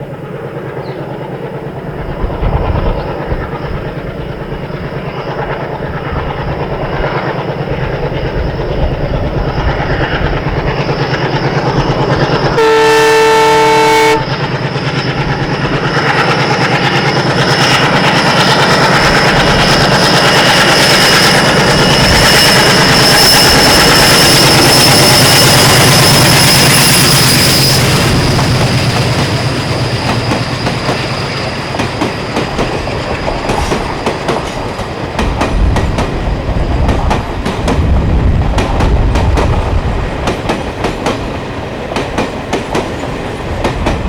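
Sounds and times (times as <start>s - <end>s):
diesel locomotive engine chugging: 0.0s - 44.0s
train horn blast: 12.6s - 14.5s.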